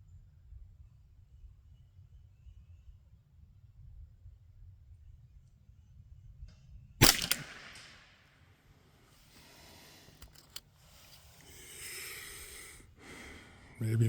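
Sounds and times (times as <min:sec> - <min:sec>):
rifle shot with echo: 0:07.0 - 0:08.2.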